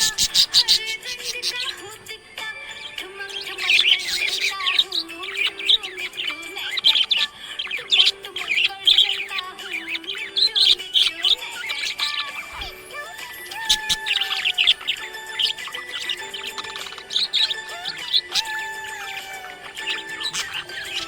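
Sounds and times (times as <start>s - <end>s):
budgerigars chirping and warbling: 0.0s - 21.0s
song playing: 10.6s - 21.0s.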